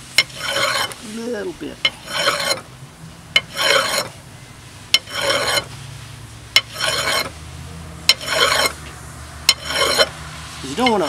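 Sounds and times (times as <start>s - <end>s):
metal file rasping over metal: 0.2s - 1.2s, 1.8s - 2.7s, 3.4s - 4.2s, 5.0s - 5.7s, 6.6s - 7.4s, 8.1s - 8.8s, 9.5s - 11.0s.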